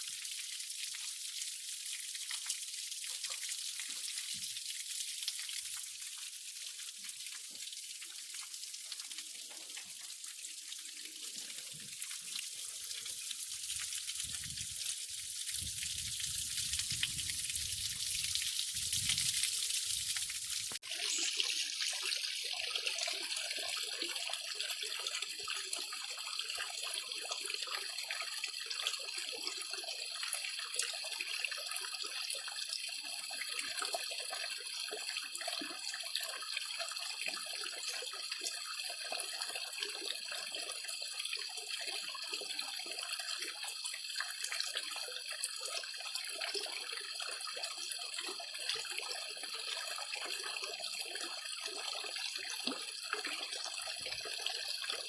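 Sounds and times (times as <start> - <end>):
water splashing into pond: 0.0 - 25.8.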